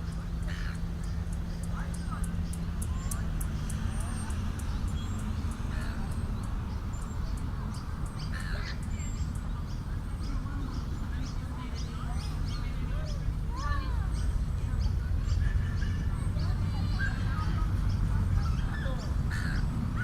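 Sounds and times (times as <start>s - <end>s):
harsh cawing calls: 0.4s - 1.3s, 8.2s - 8.9s, 18.6s - 20.0s.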